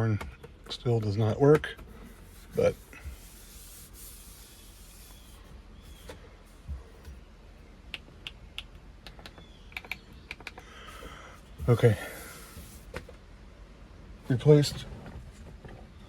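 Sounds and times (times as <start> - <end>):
low hiss: 2.0 - 8.3, 10.7 - 15.1.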